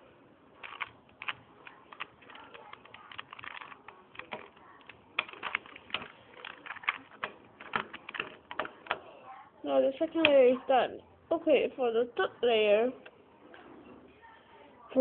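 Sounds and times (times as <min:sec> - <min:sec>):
puzzle cube layers clicking: 0:00.6 - 0:08.9.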